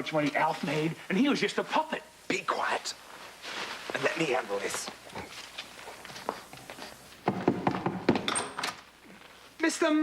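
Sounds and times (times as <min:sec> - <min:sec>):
low background hiss: 0:00.0 - 0:10.0
soft footsteps on floor: 0:03.0 - 0:07.8.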